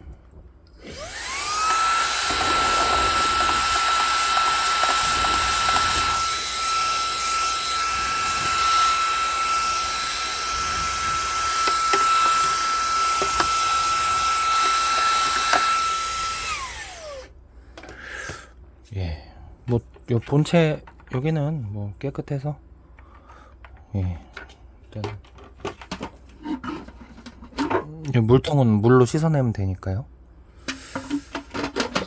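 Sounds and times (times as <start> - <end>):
handheld vacuum cleaner motor whine: 0.8 - 17.3.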